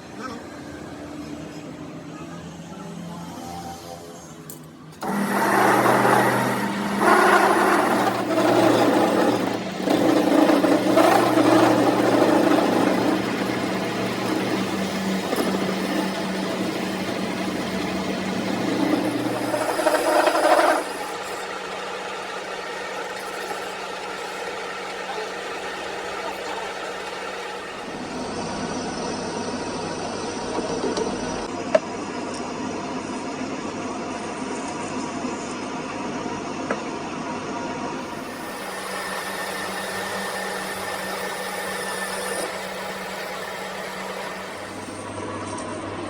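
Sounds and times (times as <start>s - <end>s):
power tool grinding metal: 5.0s - 28.2s, 38.0s - 45.2s
steady motor hum: 5.0s - 32.1s, 35.8s - 46.0s.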